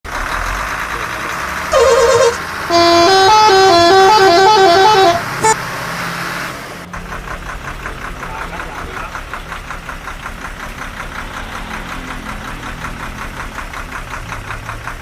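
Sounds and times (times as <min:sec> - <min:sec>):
horn playing melody: 0:01.7 - 0:05.6.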